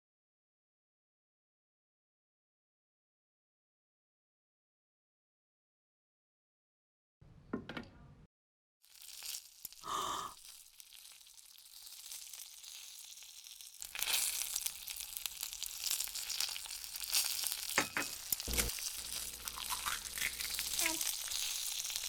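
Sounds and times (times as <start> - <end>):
bacon and eggs sizzling in a pan: 8.8 - 22.0.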